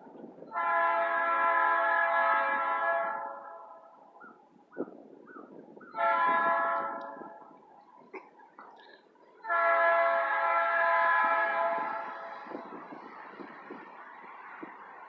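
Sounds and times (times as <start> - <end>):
locomotive air horn blasts: 0.5 - 3.8, 6.0 - 7.5, 9.4 - 12.4.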